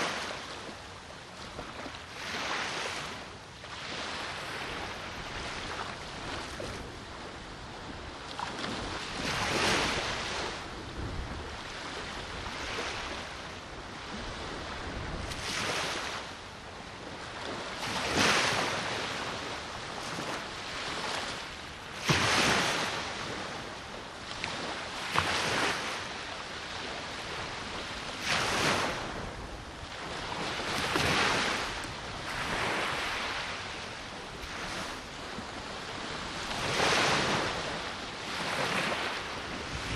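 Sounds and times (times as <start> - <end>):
waves breaking on beach: 0.0 - 39.9
wind on microphone: 4.4 - 25.8, 26.8 - 39.9.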